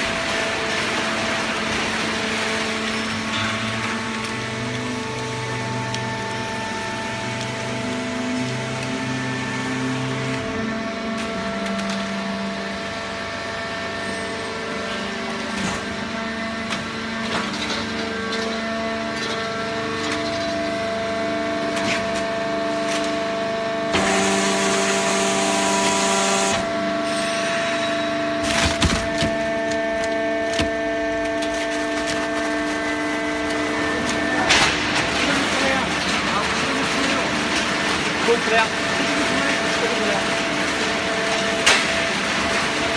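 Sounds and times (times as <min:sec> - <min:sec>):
baler machine whine and hum: 0:00.0 - 0:42.9
cardboard cracking and crunching: 0:28.4 - 0:34.2.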